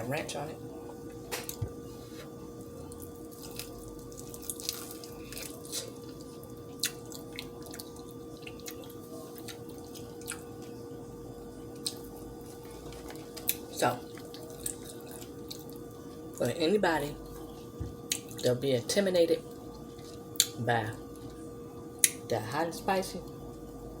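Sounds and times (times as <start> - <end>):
faint hum: 0.0 - 24.0
wet chewing and mouth clicks: 2.9 - 10.7, 11.8 - 15.9, 17.2 - 18.5.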